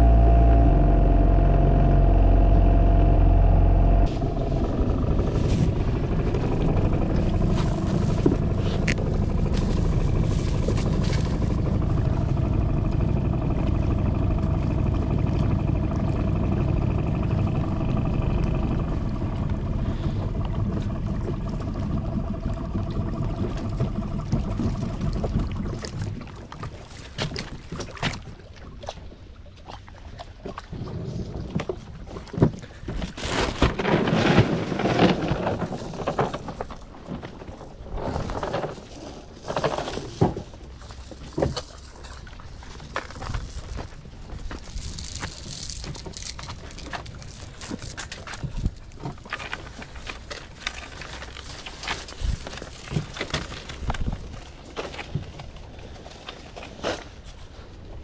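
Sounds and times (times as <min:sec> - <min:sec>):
wind noise: 0:00.0 - 0:12.5
boat motor running: 0:00.0 - 0:28.2, 0:33.7 - 0:57.6.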